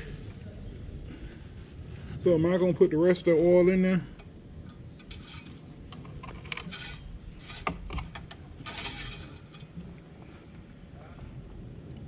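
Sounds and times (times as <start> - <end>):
scraping and rubbing: 4.7 - 9.8.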